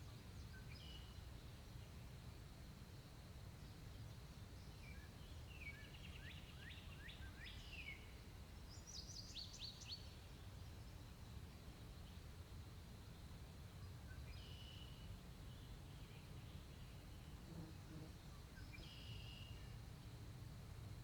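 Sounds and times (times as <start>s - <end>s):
songbird chirping: 14.1s - 19.8s.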